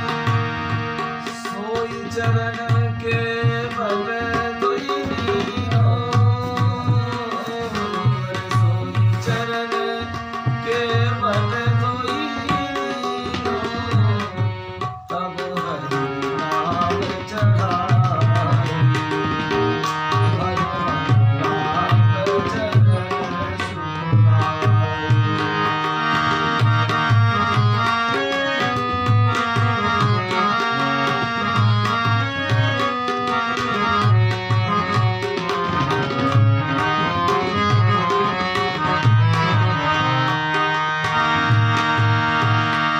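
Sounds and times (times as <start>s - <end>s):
tabla playing: 0.0s - 42.9s.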